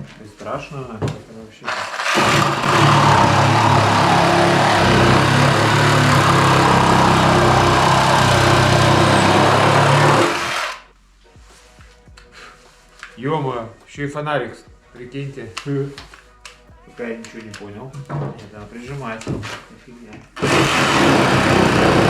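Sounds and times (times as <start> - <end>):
reciprocating saw sawing: 1.6 - 10.9, 18.7 - 22.0.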